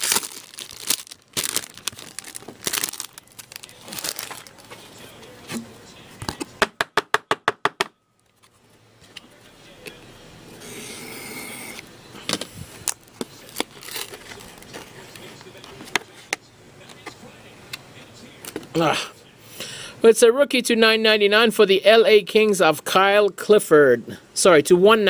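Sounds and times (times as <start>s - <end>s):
foil wrapper crinkling and tearing: 0.0s - 4.9s, 12.8s - 15.2s
cards rustling: 0.0s - 5.0s, 12.8s - 17.2s.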